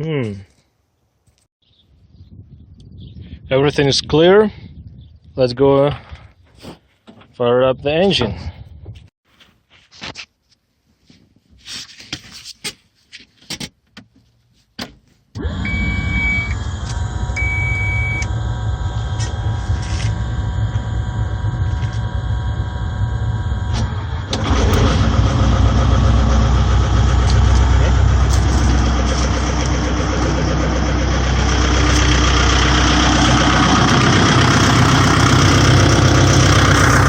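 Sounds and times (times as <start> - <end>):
diesel engine starting and running: 15.4 - 37.0
short high beeps: 17.4 - 18.3.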